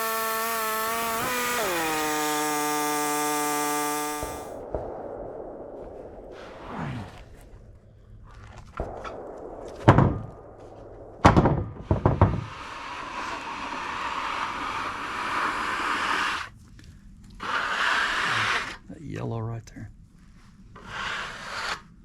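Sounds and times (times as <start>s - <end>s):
steady scraping: 0.0s - 4.6s.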